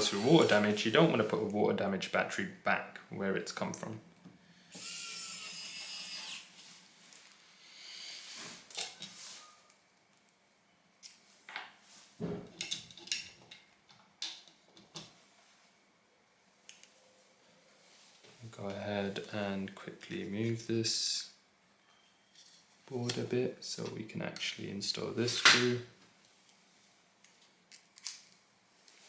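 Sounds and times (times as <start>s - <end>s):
parts scraping: 0.0s - 1.3s
small parts and tools clicking: 27.2s - 29.0s.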